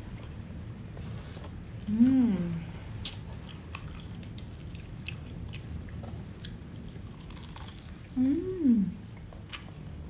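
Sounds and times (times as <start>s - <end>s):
person humming: 1.9s - 2.7s, 8.2s - 9.0s
person chewing crunchy food: 2.9s - 8.2s, 9.1s - 10.0s.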